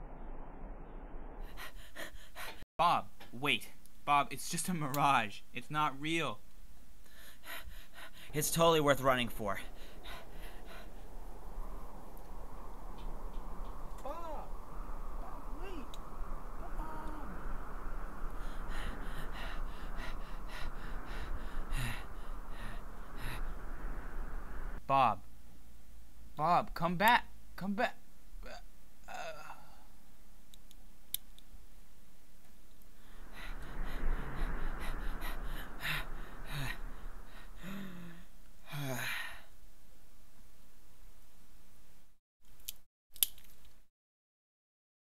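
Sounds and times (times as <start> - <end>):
steady hiss: 1.6 - 26.3, 30.1 - 41.1.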